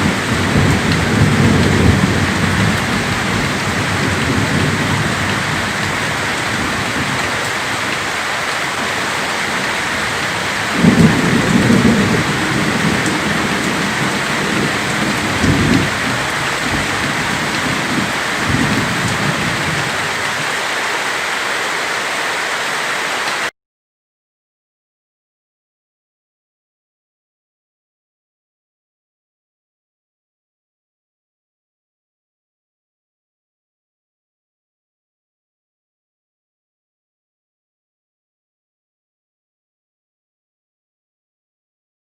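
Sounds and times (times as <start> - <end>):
thunder rumbling: 0.0 - 20.6
heavy rain downpour: 0.0 - 23.5.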